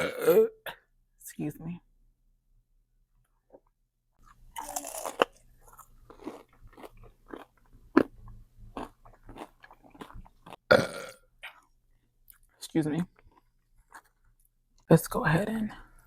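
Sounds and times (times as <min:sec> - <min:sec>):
crunchy bite of food: 0:04.5 - 0:11.6.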